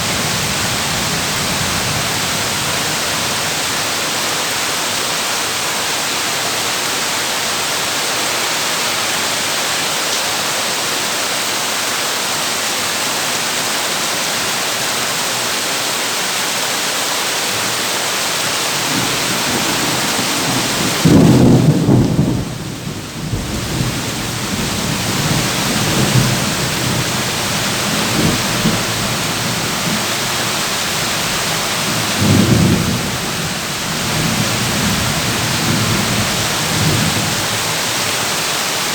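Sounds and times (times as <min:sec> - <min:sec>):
thunder rumbling: 0:00.0 - 0:03.6, 0:18.7 - 0:37.6
heavy rain on a tin roof: 0:00.0 - 0:38.9.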